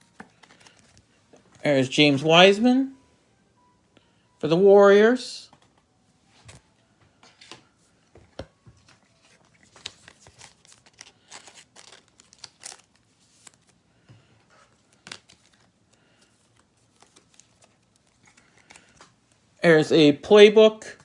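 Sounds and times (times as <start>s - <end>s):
crinkling of cards and packaging: 0.0s - 2.0s, 6.4s - 19.5s.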